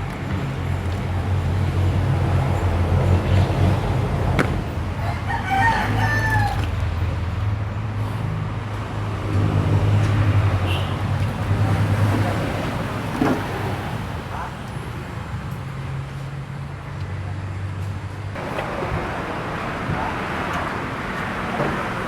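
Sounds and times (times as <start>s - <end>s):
rooster crowing: 5.0s - 6.8s.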